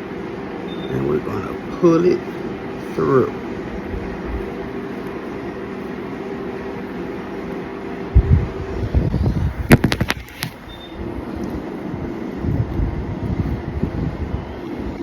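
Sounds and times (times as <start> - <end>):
room hum with low tone: 0.0 - 15.0.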